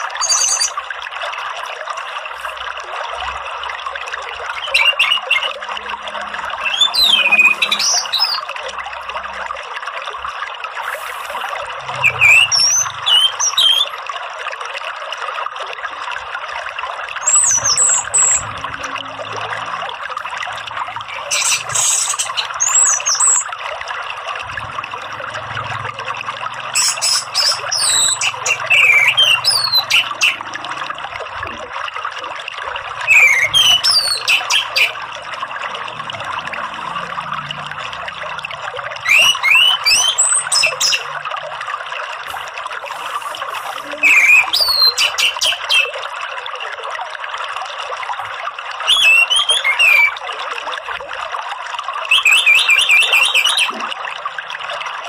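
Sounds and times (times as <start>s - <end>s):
thrush singing whistled phrases: 0.0s - 0.8s, 4.5s - 5.6s, 6.2s - 8.5s, 11.2s - 14.0s, 17.2s - 18.5s, 21.0s - 23.5s, 26.7s - 30.5s, 33.0s - 35.0s, 39.0s - 41.2s, 42.9s - 46.0s, 48.9s - 50.2s, 52.1s - 53.7s
running water: 0.0s - 55.0s.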